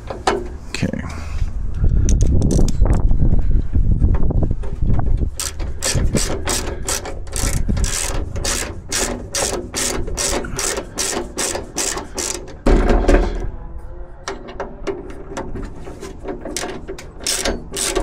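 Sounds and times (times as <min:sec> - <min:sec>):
hand ratchet clicking: 0:05.3 - 0:12.6, 0:16.5 - 0:18.0.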